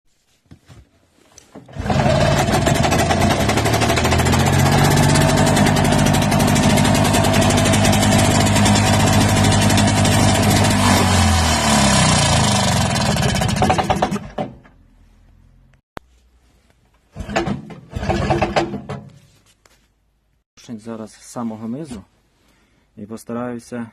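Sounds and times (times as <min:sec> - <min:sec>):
small engine knocking: 0:01.7 - 0:14.6, 0:17.2 - 0:18.7.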